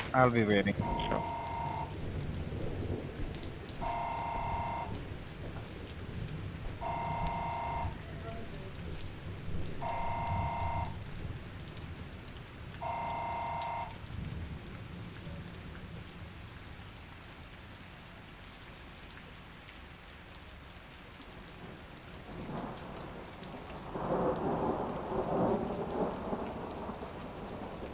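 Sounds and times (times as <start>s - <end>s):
thunder rumbling: 0.0s - 15.1s, 22.3s - 27.9s
steady rain: 0.0s - 27.9s
electronic beeps: 0.8s - 2.0s, 3.8s - 4.9s, 6.8s - 8.0s, 9.8s - 11.0s, 12.8s - 14.0s.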